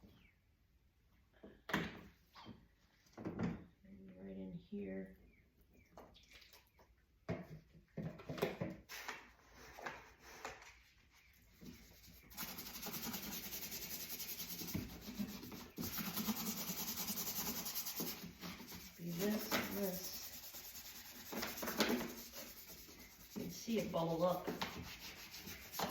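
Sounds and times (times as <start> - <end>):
brush scrubbing: 11.2 - 25.9.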